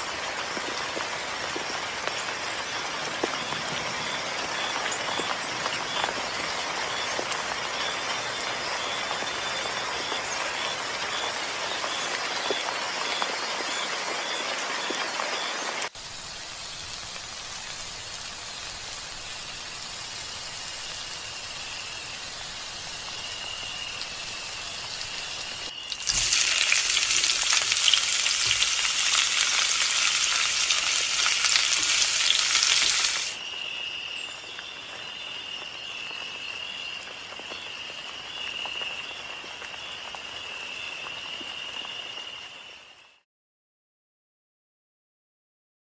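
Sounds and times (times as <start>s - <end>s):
fish sizzling in hot oil: 16.0s - 33.4s.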